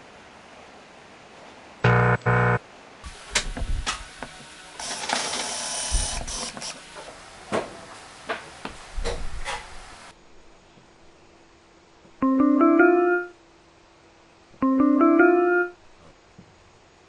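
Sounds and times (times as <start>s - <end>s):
buzzing: 1.8s - 2.6s.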